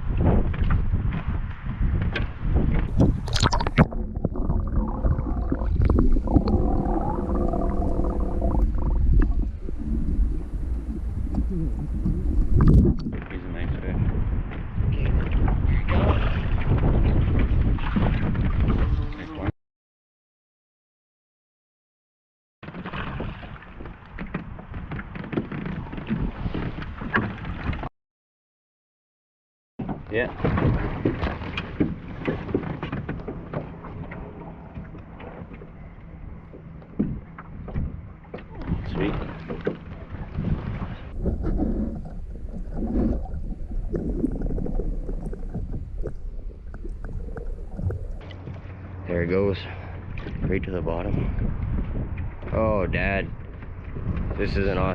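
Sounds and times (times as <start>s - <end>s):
wind buffeting microphone: 0.0s - 19.4s, 34.4s - 54.9s
gurgling water: 2.6s - 19.2s, 30.3s - 52.5s
low rumble: 2.8s - 19.1s, 38.0s - 54.3s.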